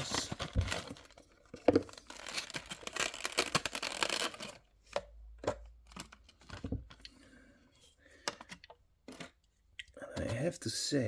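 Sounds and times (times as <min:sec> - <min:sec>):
packaging rustling and crackling: 0:00.0 - 0:04.7.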